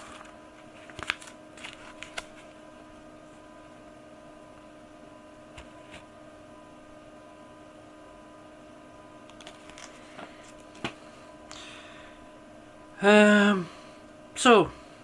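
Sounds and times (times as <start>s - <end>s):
steady electrical hum: 0.0s - 15.0s
man's voice: 14.4s - 14.8s.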